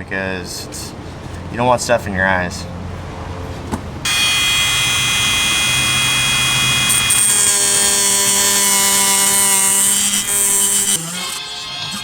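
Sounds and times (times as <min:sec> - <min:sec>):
power tool cutting metal: 0:04.1 - 0:12.0.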